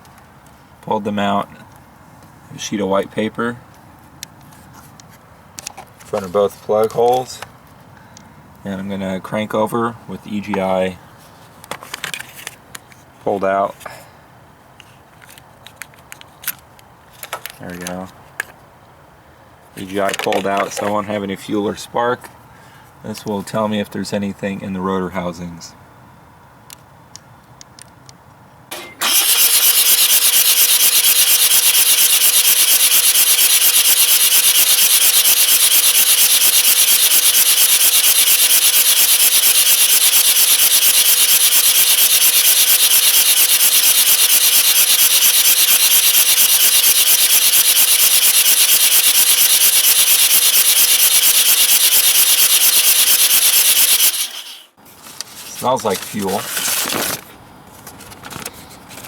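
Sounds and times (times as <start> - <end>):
engine cranking by starter: 28.7 - 54.7.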